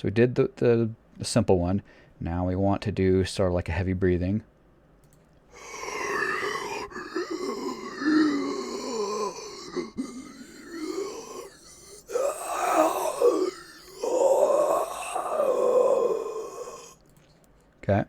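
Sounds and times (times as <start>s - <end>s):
person groaning like a zombie: 5.6s - 17.0s.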